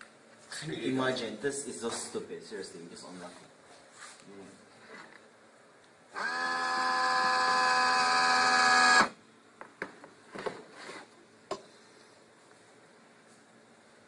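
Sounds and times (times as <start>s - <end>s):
electric motor whirring: 6.1s - 9.2s.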